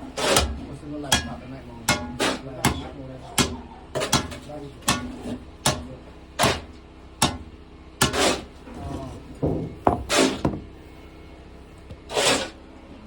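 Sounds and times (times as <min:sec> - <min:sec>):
rebar scraping: 0:09.9 - 0:10.5, 0:12.1 - 0:12.6.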